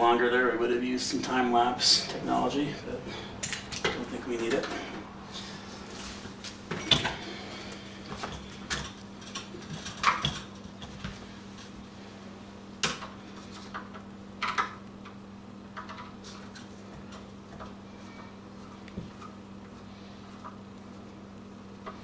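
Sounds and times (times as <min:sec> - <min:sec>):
steady low hum: 0:00.0 - 0:22.0.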